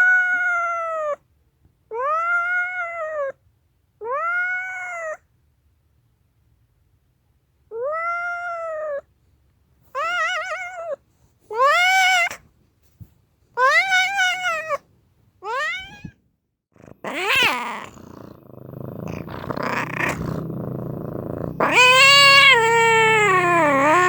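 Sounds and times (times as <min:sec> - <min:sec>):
cat yowling: 0:00.0 - 0:01.2, 0:01.9 - 0:03.4, 0:04.0 - 0:05.2, 0:07.7 - 0:09.1, 0:10.0 - 0:12.4, 0:13.6 - 0:14.8, 0:15.4 - 0:16.2, 0:16.8 - 0:24.0
cat growling: 0:16.7 - 0:24.0.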